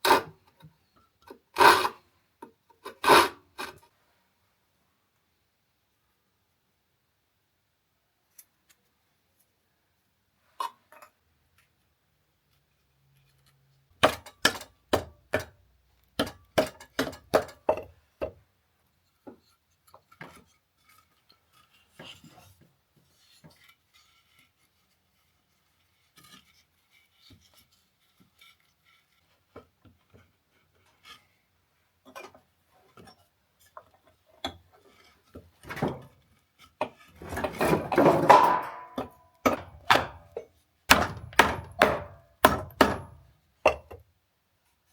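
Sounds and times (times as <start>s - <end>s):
scraping rasp: 1.6s - 2.0s, 2.8s - 3.9s
tools clicking and tapping: 13.4s - 18.4s, 38.3s - 44.0s
knocks on wood: 40.9s - 43.1s.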